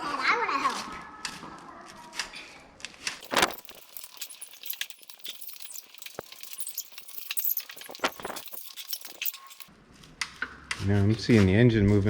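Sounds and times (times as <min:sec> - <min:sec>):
metal tools clinking: 0:03.2 - 0:09.7.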